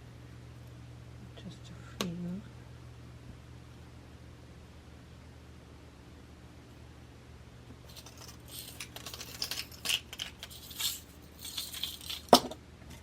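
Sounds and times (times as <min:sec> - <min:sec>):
metal chain jingling: 0:07.9 - 0:12.4.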